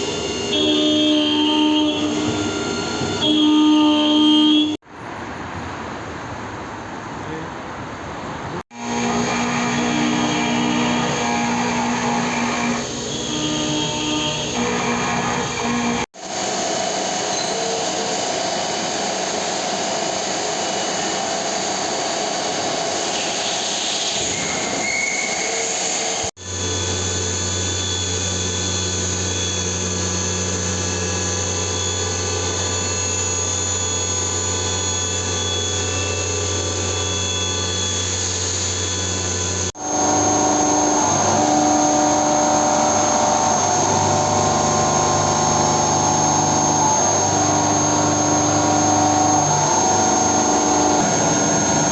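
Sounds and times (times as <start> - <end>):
milling machine running: 8.7 - 23.5, 25.6 - 51.9.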